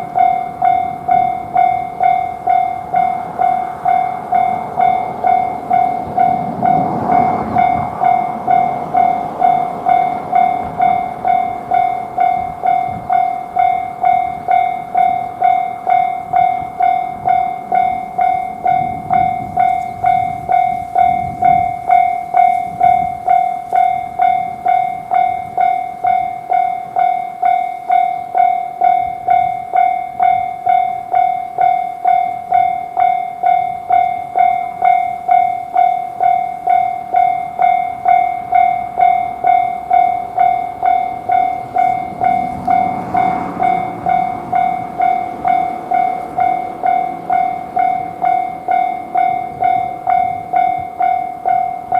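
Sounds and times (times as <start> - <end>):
railroad crossing bell ringing: 0.0 - 51.9.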